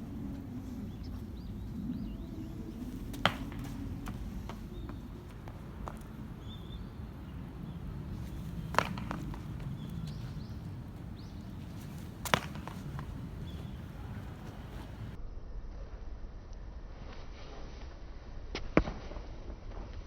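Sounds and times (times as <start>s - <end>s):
low outdoor rumble: 0.0s - 16.0s
foot strikes on running track: 2.7s - 15.2s.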